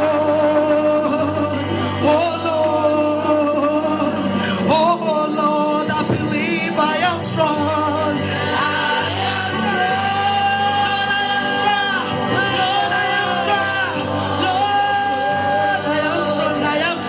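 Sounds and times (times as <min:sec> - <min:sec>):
gospel choir singing: 0:00.0 - 0:17.0
instrumental accompaniment with bass line: 0:00.0 - 0:17.0.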